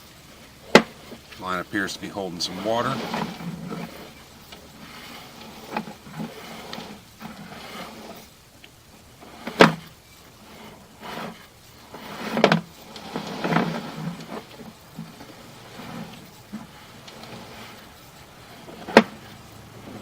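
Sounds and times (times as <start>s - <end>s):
cable knocking and scraping in pipe: 2.4s - 20.0s.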